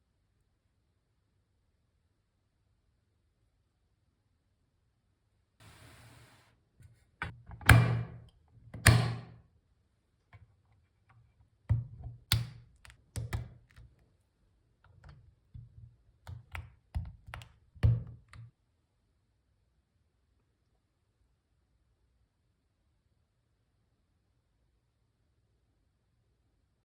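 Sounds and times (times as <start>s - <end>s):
deep key thuds: 7.6s - 9.3s.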